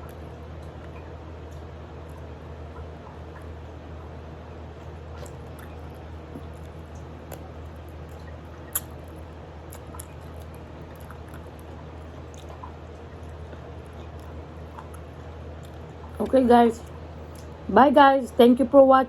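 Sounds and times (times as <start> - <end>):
person chewing: 5.2 - 16.2.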